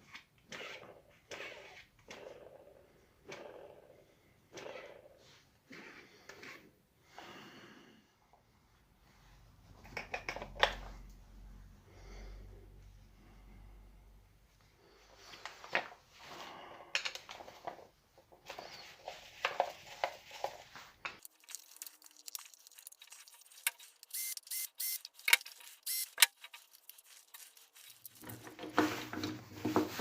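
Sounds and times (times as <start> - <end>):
short squeaky tones: 24.0 - 26.4.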